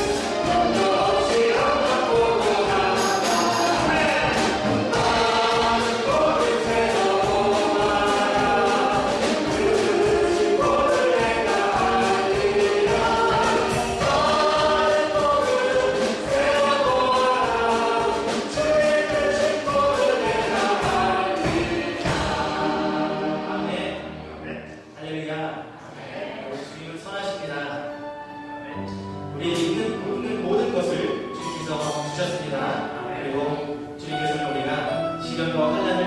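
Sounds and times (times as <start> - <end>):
group singing gospel song: 0.0 - 24.4
band accompaniment: 0.0 - 25.0, 26.3 - 36.0.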